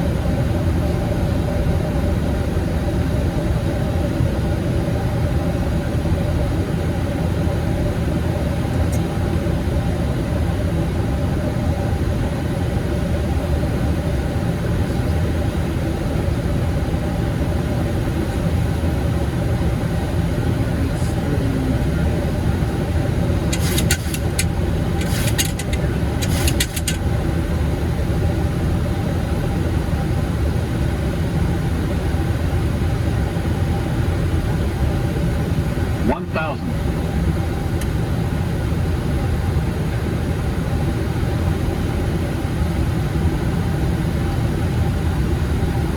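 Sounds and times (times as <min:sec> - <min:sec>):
airflow and engine rumble: 0:00.0 - 0:45.9
sharp clicks and rattles: 0:23.5 - 0:27.0.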